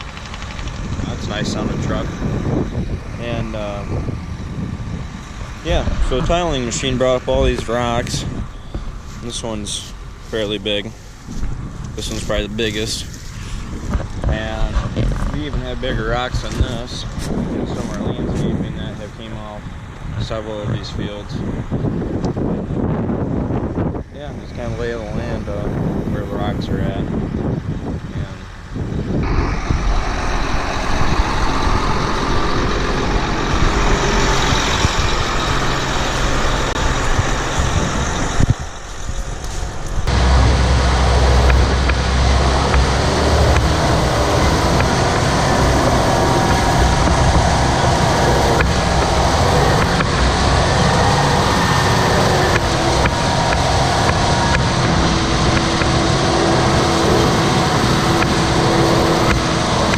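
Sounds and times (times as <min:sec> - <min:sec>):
heavy farm vehicle engine running: 0:28.8 - 0:59.9.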